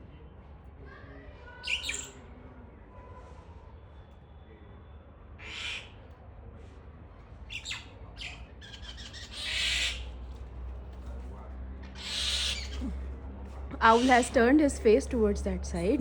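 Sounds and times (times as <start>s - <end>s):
birds calling: 1.6s - 2.2s, 5.4s - 5.9s, 7.5s - 10.2s, 11.9s - 13.1s, 13.7s - 16.0s.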